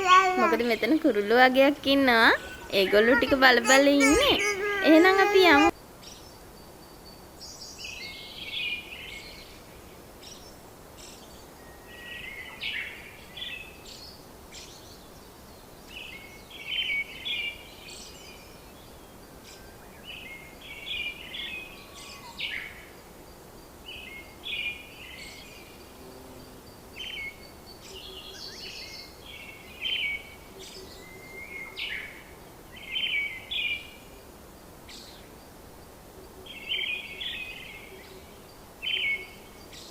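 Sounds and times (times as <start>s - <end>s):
birds chattering and chirping: 0.0s - 5.7s
faint steady background noise: 0.0s - 39.9s.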